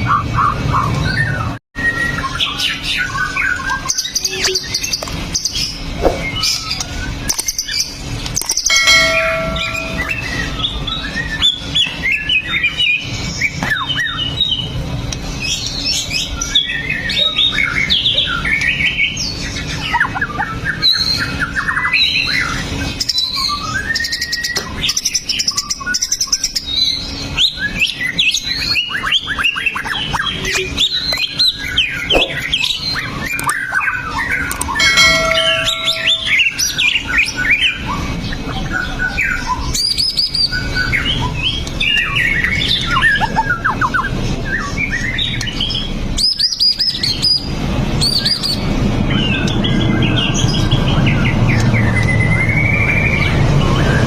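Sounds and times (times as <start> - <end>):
bird singing whistles and chatter: 0.0 - 9.3, 15.4 - 35.6
steady low hum: 7.9 - 11.0.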